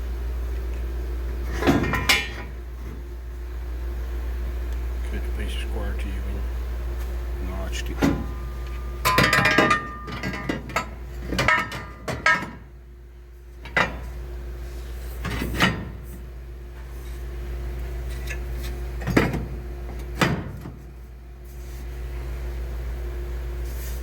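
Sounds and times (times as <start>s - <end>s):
steady low hum: 0.0s - 24.0s
metal tubing clanking: 8.0s - 12.7s.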